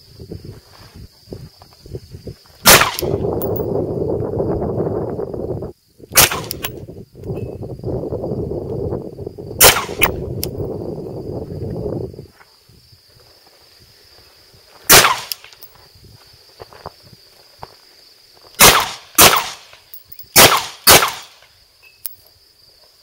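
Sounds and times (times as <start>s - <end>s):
pistol shots: 2.7s - 3.1s, 6.2s - 6.7s, 9.6s - 10.2s, 14.9s - 15.4s, 18.6s - 19.7s, 20.3s - 21.4s.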